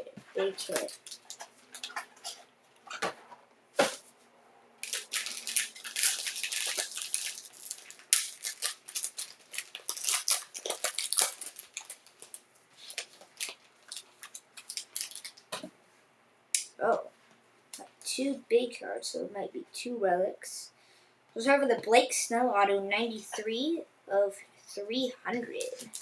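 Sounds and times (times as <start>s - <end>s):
plastic wrapping tearing and crinkling: 0.4s - 3.0s, 4.8s - 15.6s, 25.6s - 26.0s.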